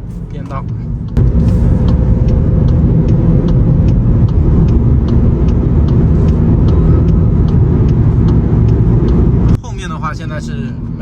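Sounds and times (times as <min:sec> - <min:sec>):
car road and engine rumble: 0:00.0 - 0:11.0
turn signal ticking: 0:00.0 - 0:11.0.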